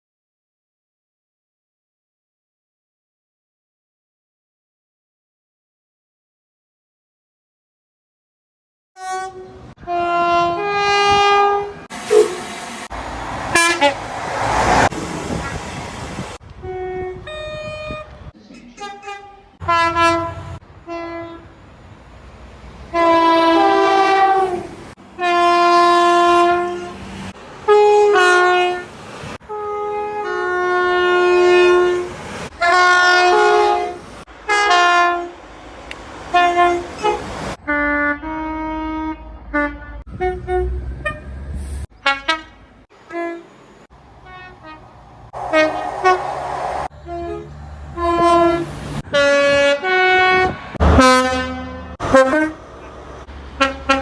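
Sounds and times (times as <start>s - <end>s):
two-tone train horn blasts: 9.0s - 12.5s, 13.5s - 14.9s, 16.5s - 21.6s, 22.9s - 27.0s, 27.7s - 35.4s, 36.3s - 41.4s, 42.0s - 52.8s, 53.6s - 54.0s
low rumble of trains: 9.0s - 54.0s.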